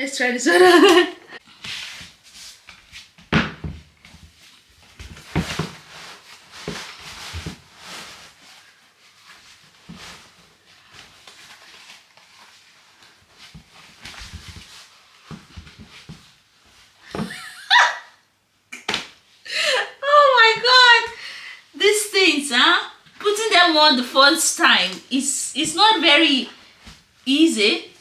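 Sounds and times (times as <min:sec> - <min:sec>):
boot handling rustling: 0:04.5 - 0:17.3.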